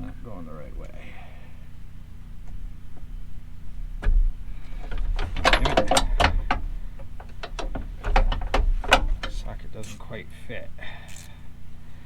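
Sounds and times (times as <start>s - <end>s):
metal knocks and clinks: 4.7s - 9.4s.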